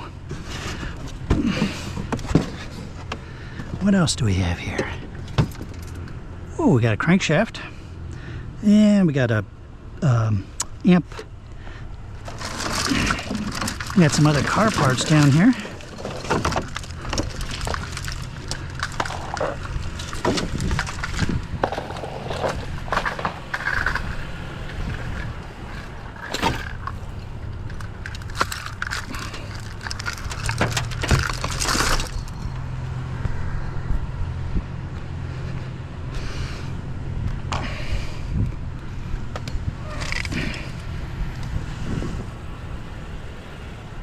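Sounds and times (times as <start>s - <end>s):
scrap metal clanking and rattling: 0.0s - 3.8s, 12.2s - 32.8s.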